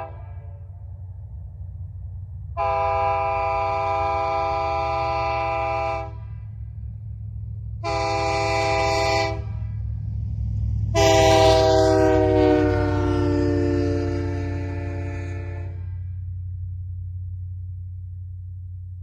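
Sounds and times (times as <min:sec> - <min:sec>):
locomotive air horn blasts: 0:00.0 - 0:00.8, 0:02.6 - 0:06.5, 0:07.8 - 0:10.0, 0:10.8 - 0:16.2
steady low hum: 0:00.0 - 0:19.0.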